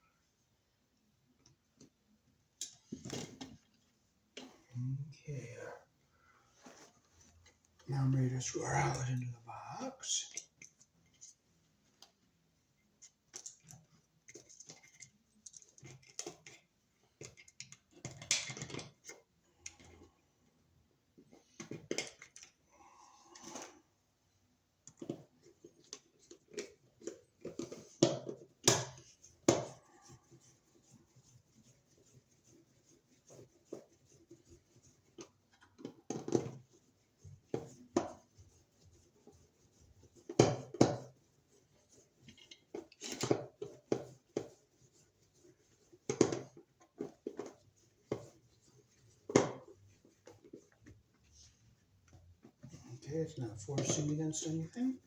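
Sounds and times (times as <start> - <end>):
scrapes clicks and knocks of hand work: 2.6 - 4.6, 13.0 - 20.2, 21.2 - 22.6, 24.8 - 54.5.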